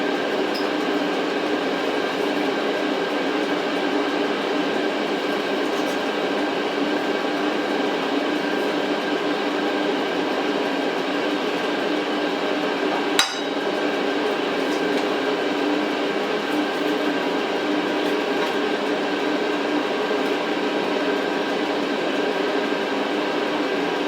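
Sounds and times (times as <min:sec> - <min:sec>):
droning hum with held tones: 0:12.9 - 0:14.2
sharp ringing clink: 0:13.2 - 0:13.7.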